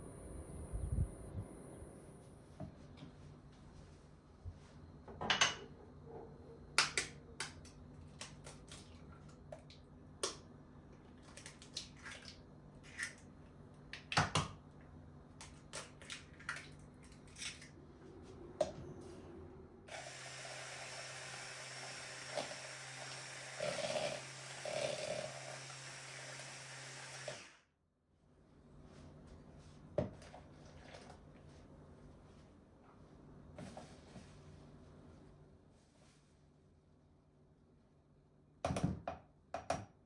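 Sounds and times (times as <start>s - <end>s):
low hum with hiss: 0.0s - 20.6s.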